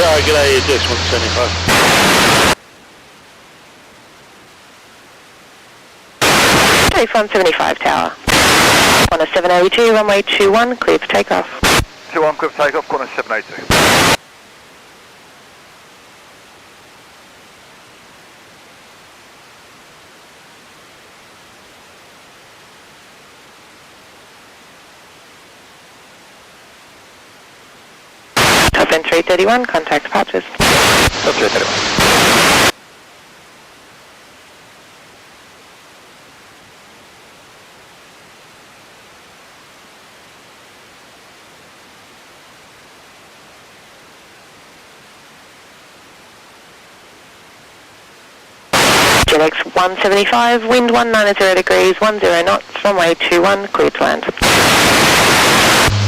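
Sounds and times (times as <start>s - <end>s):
radio static hiss: 0.0s - 2.6s, 6.2s - 14.2s, 28.2s - 32.8s, 40.2s - 56.0s.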